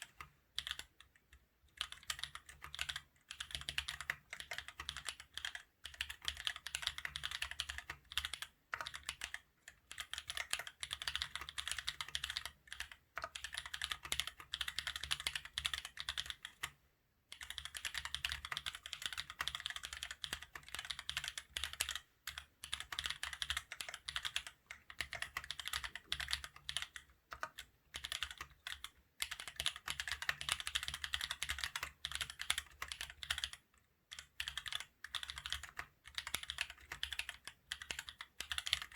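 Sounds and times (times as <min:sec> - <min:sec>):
mechanical keyboard typing: 0:00.0 - 0:38.9.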